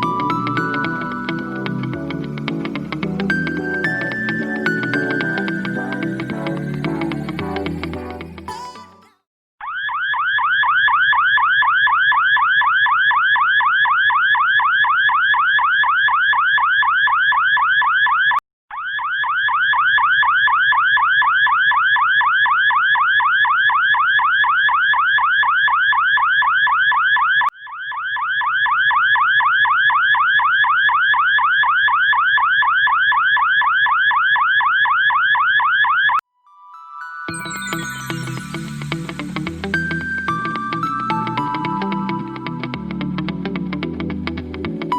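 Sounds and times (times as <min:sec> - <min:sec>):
car alarm siren: 0:09.6 - 0:36.2.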